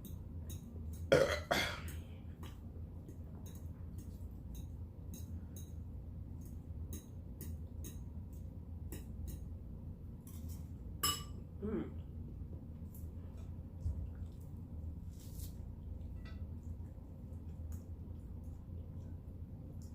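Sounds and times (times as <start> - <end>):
cutlery clinking against dishes: 10.3 - 11.4.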